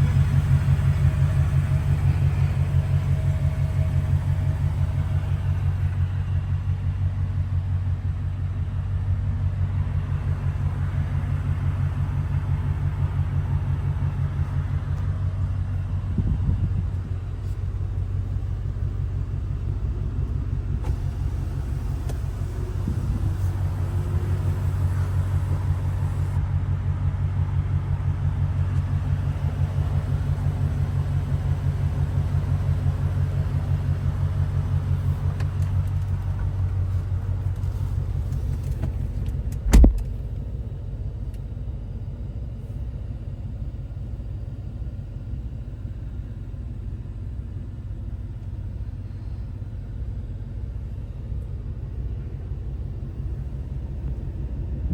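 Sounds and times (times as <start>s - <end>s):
engine idling low rumble: 0.0s - 54.9s
sharp thump: 39.6s - 40.4s.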